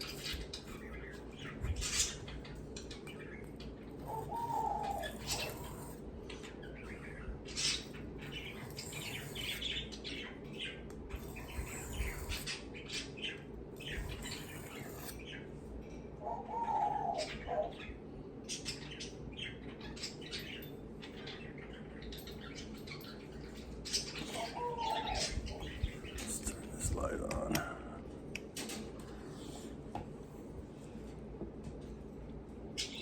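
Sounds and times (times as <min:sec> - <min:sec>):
pet bird chirping: 0:00.0 - 0:27.2, 0:32.8 - 0:33.0
lower bird calls: 0:03.9 - 0:09.9
knife scraping on sharpening stone: 0:11.2 - 0:12.5, 0:13.9 - 0:15.3.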